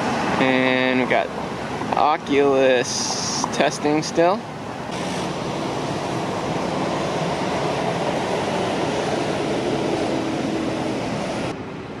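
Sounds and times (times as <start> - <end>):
steady vehicle noise: 0.0 - 12.0.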